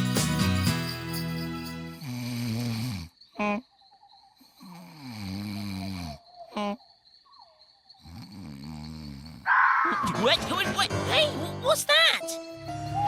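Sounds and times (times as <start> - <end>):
high chirp of insects: 0.8 - 10.1
cartoon snore: 1.9 - 3.6, 4.5 - 6.8, 8.0 - 9.5
short croaking calls: 3.3 - 10.0.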